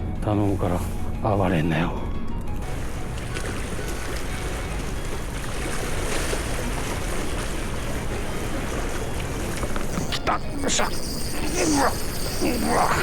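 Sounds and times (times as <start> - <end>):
sea waves washing ashore: 2.6 - 13.0.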